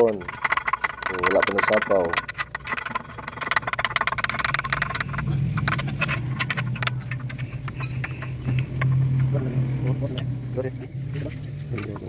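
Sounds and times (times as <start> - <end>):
tools and engine parts clinking: 0.0 - 12.0
low engine hum: 3.6 - 12.0.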